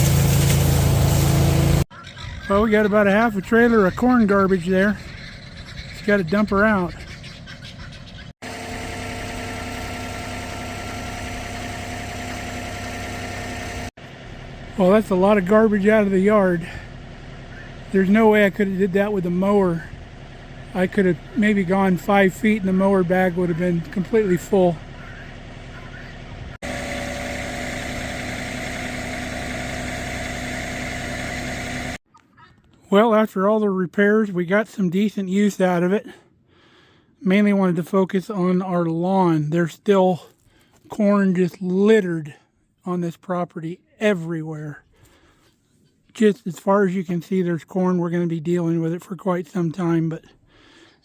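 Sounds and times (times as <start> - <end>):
engine idling: 0.0 - 32.0.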